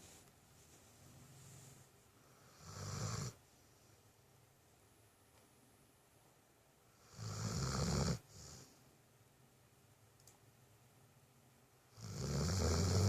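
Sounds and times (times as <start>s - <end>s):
soft breath: 0.0s - 2.8s
dog snoring: 1.4s - 3.4s, 6.9s - 8.8s, 11.9s - 13.0s.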